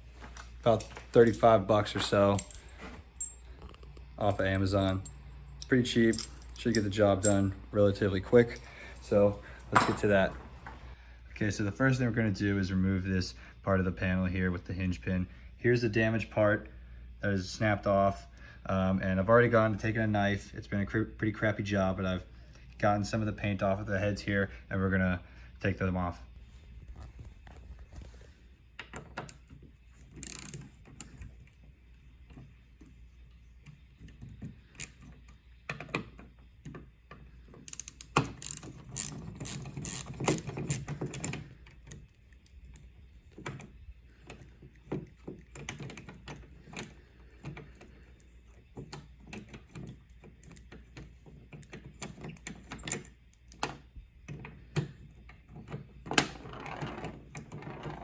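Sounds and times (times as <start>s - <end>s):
metal tools clinking: 0.2s - 10.8s
hand ratchet clicking: 28.9s - 31.2s, 33.7s - 42.9s.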